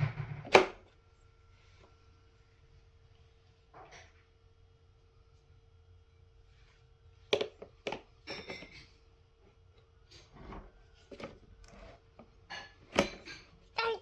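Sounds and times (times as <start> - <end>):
knocks and rattles: 0.0 - 0.8.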